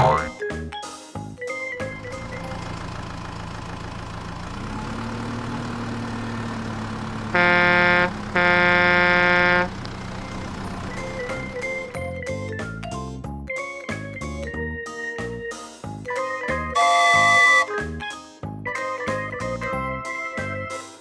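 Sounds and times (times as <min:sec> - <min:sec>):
truck engine running: 0:01.8 - 0:12.3
truck horn blasts: 0:01.9 - 0:12.0, 0:16.8 - 0:17.7.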